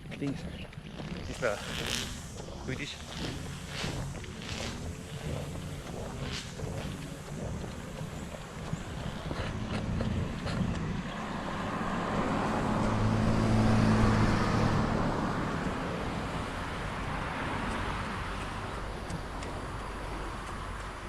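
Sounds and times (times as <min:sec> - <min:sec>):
car passing by: 0:01.3 - 0:21.0.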